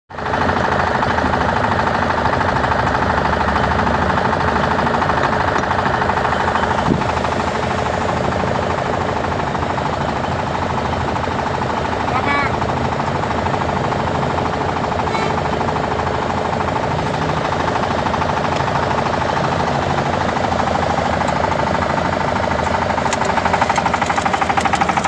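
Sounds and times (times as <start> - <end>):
machine noise: 0.1 - 25.0
welding crackle: 23.0 - 25.0.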